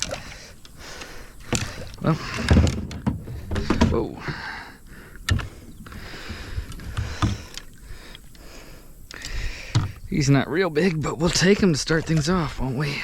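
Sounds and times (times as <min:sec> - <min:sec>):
sharp knocks against boat: 0:01.5 - 0:04.4.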